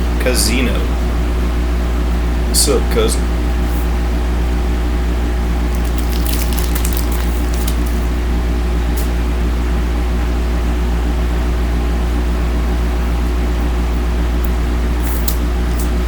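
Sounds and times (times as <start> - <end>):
electrical mains hum: 0.0 - 16.0
card pack crinkling: 5.7 - 8.1.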